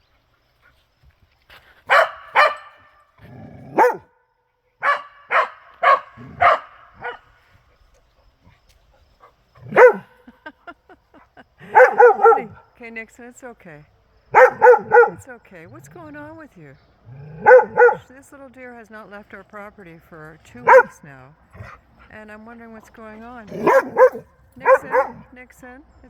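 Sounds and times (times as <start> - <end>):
dog barking: 1.9 - 2.9, 3.7 - 4.2, 4.8 - 7.3, 9.6 - 10.2, 11.7 - 12.7, 14.3 - 15.2, 17.4 - 18.1, 20.6 - 21.0, 23.5 - 25.3.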